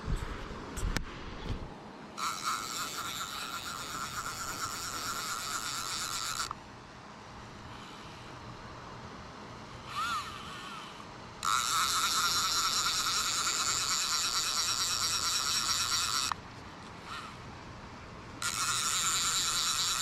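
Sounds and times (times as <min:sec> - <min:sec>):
fly reel clicker drag buzzing: 0:02.2 - 0:06.6, 0:09.9 - 0:10.8, 0:11.4 - 0:16.4, 0:18.4 - 0:20.0.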